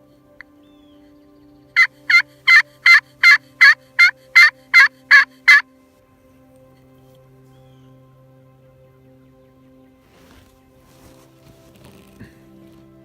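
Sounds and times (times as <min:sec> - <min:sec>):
turkey yelps on a slate call: 0:01.8 - 0:05.6.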